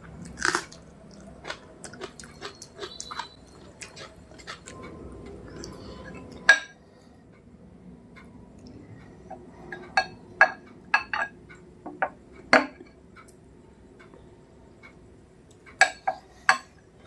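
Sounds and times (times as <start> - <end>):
chewing food: 0.2 - 6.5.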